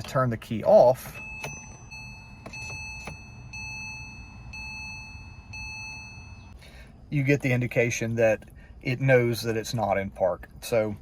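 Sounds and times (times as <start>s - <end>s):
car warning chime beeping: 0.0s - 6.6s.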